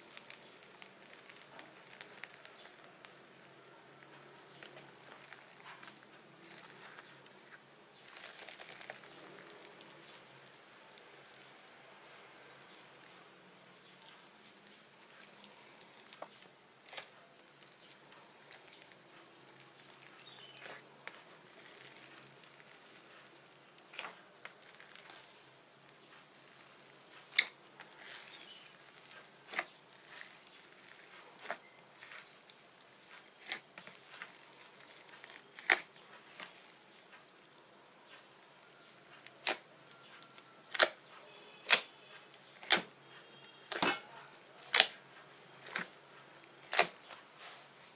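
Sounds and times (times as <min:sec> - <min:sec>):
slime popping and clicking: 0:40.6 - 0:41.0, 0:41.6 - 0:41.9, 0:46.6 - 0:47.0.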